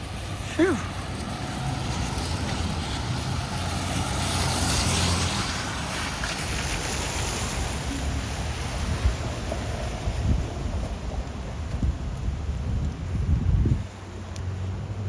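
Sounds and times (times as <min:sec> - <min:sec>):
vehicle passing on wet road: 0:00.0 - 0:15.0.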